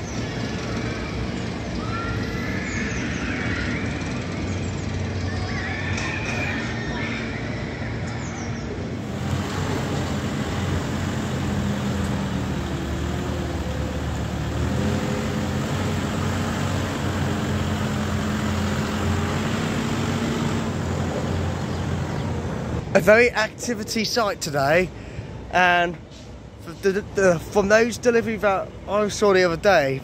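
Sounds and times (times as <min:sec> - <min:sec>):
diesel construction machinery drone: 0:00.0 - 0:30.0
rushing noise: 0:08.8 - 0:23.4.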